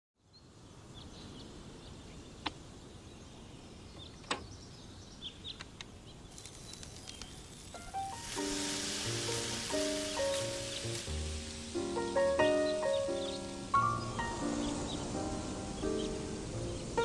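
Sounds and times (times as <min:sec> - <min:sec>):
music: 0:07.8 - 0:17.0.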